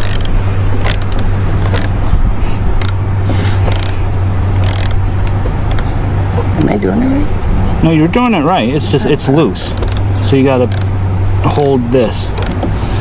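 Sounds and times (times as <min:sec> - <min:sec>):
hand ratchet clicking: 0:00.0 - 0:02.0, 0:02.8 - 0:03.0, 0:03.7 - 0:04.0, 0:04.6 - 0:05.9, 0:09.6 - 0:12.7
steady low hum: 0:00.0 - 0:13.0.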